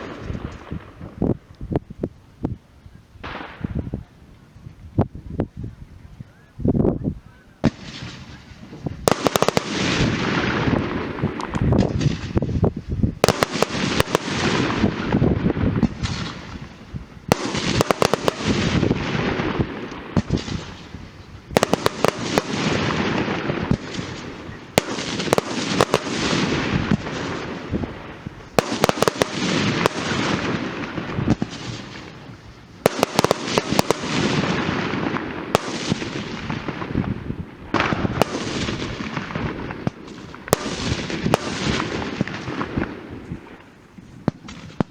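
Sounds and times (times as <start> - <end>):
fireworks bangs: 0.0 - 1.5, 3.2 - 4.2, 7.6 - 44.9
fireworks crackling hiss: 0.0 - 44.9.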